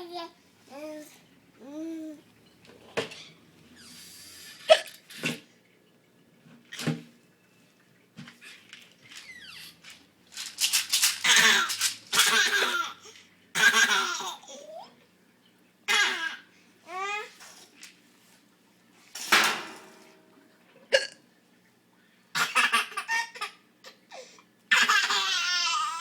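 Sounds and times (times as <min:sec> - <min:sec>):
woman hiccuping: 0:20.9 - 0:21.2.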